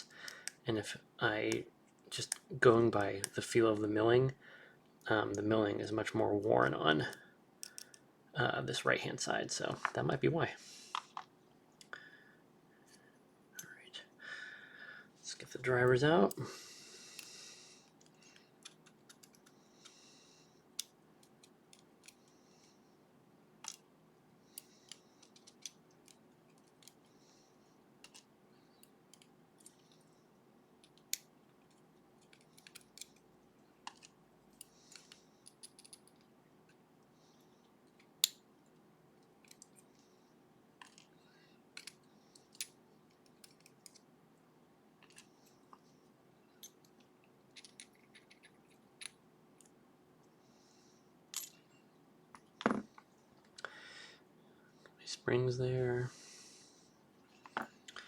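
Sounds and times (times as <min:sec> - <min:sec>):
small metal clicks from lock parts: 0:07.6 - 0:08.0, 0:20.8 - 0:22.2, 0:24.6 - 0:27.0, 0:30.8 - 0:33.3, 0:33.9 - 0:36.3, 0:39.4 - 0:39.8, 0:41.8 - 0:44.0, 0:46.6 - 0:49.8.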